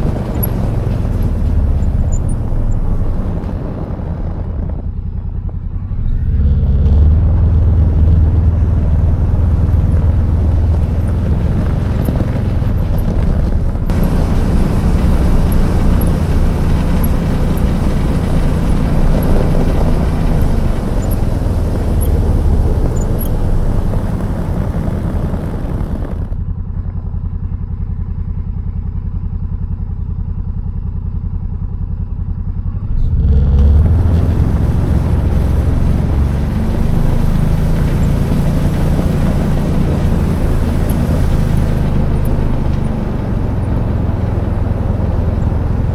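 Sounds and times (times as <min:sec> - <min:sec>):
atv engine running: 0:00.0 - 0:45.9.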